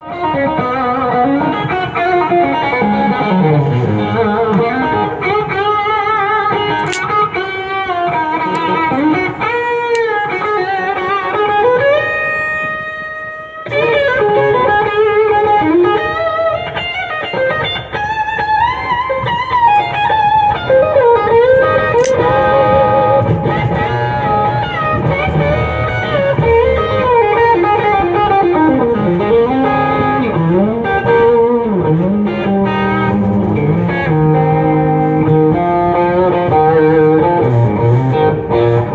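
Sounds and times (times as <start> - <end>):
electric guitar lead lines: 0.0 - 38.9.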